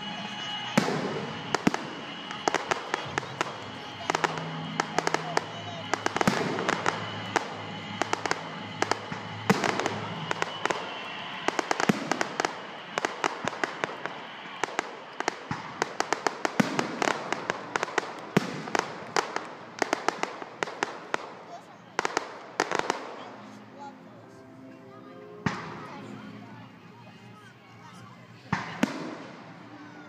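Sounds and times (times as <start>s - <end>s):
fireworks crackling: 0.0s - 24.0s, 25.4s - 30.0s
fireworks cracking and popping: 0.1s - 23.6s.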